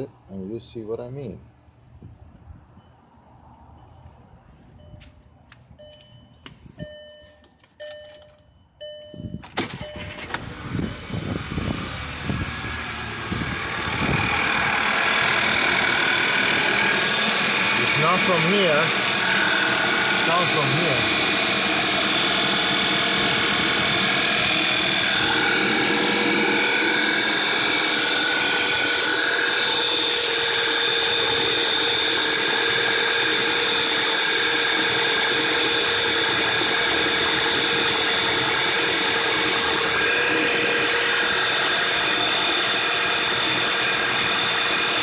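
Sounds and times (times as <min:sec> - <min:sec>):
engine ticking: 0:09.8 - 0:40.0
car engine running: 0:09.8 - 0:45.0.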